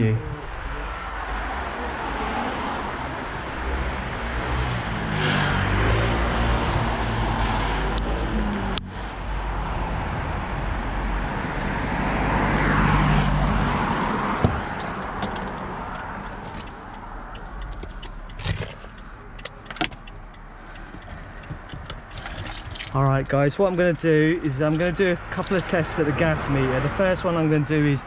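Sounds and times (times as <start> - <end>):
car passing: 0.0 - 28.0
light clicks and clinks: 17.4 - 25.8.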